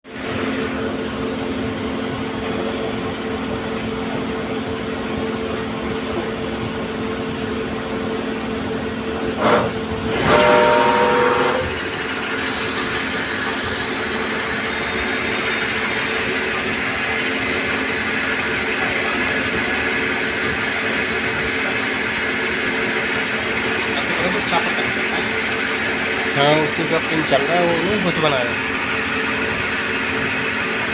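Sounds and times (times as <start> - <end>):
lathe machine hum: 0.1 - 30.9
metal cutting noise: 9.2 - 19.8.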